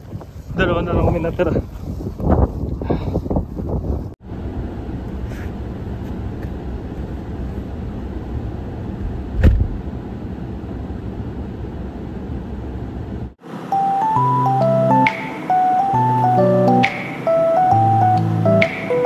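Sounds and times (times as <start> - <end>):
car road and engine noise: 0.0 - 19.0
thump: 9.4 - 9.8.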